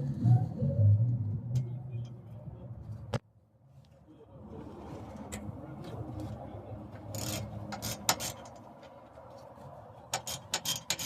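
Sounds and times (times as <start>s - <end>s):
hand tools clicking on metal: 7.2s - 8.6s, 10.1s - 11.0s.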